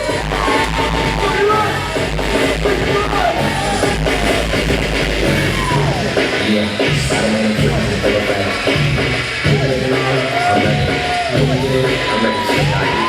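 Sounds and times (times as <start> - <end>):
dance music with heavy bass: 0.0 - 13.0
voices over music: 5.4 - 13.0.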